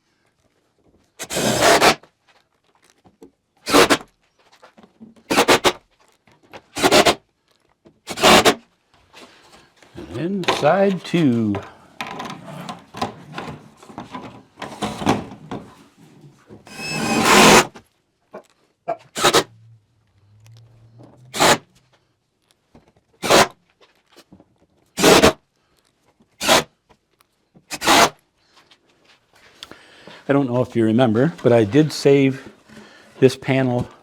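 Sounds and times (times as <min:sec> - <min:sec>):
plastic panel rubbing and scraping: 0:10.0 - 0:17.8, 0:19.0 - 0:19.6, 0:20.7 - 0:21.9
sharp rasps: 0:19.1 - 0:19.5, 0:21.3 - 0:21.7.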